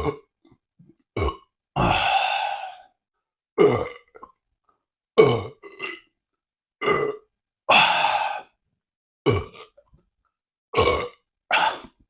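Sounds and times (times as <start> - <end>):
man burping: 3.6 - 4.2, 5.2 - 6.0, 9.3 - 9.8, 10.8 - 11.9.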